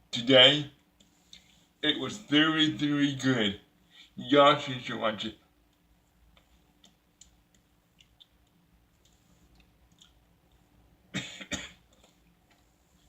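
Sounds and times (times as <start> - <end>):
faint room noise: 0.0 - 13.0
man coughing: 11.1 - 11.9.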